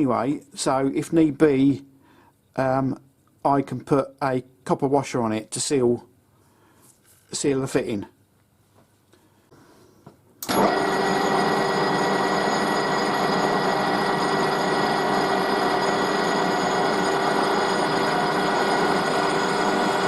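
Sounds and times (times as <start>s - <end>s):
metal lathe whine: 10.4s - 20.0s.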